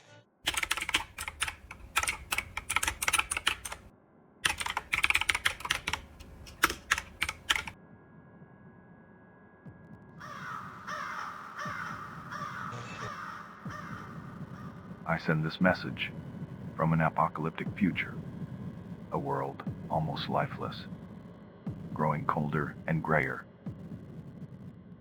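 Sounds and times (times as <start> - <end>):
fast typing on keyboard: 0.5 - 7.8
crows cawing: 10.2 - 15.0.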